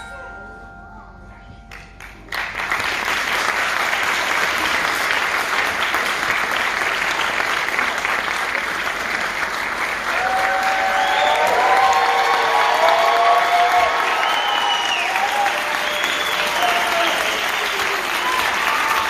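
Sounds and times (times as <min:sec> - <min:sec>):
audience applauding: 0:02.0 - 0:19.0
voices cheering: 0:10.1 - 0:19.0.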